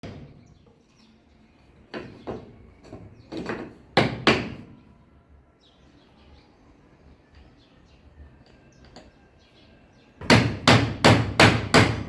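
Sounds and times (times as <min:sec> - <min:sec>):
hammer striking a nail: 0:03.5 - 0:04.7, 0:10.2 - 0:12.0.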